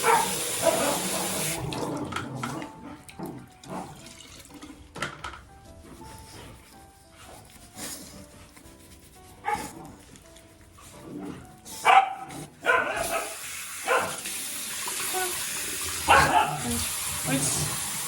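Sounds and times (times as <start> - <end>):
dog barking: 0.0 - 1.4, 9.4 - 9.8, 11.8 - 14.2, 16.0 - 17.0
shower water running: 0.0 - 2.2, 12.8 - 18.0.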